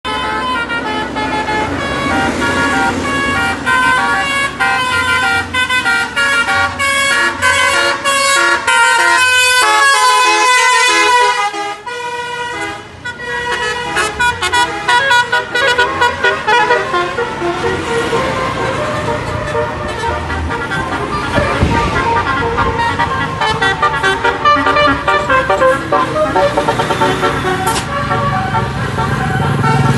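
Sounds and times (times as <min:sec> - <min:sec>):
tuned bus air horns melody: 0:00.1 - 0:29.9.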